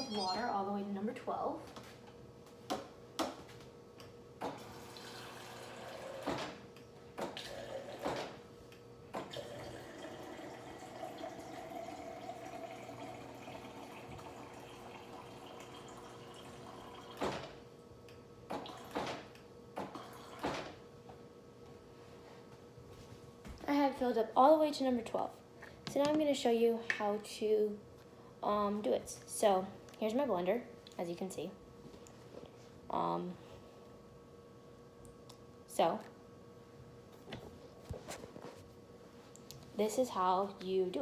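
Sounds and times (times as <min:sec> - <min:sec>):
water running into blender jar: 0:09.3 - 0:17.2.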